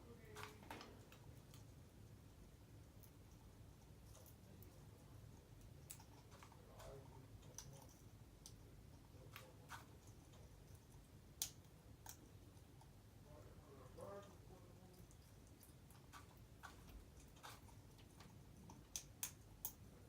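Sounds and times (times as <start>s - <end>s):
parrot clicking: 11.3s - 13.0s, 15.0s - 19.9s.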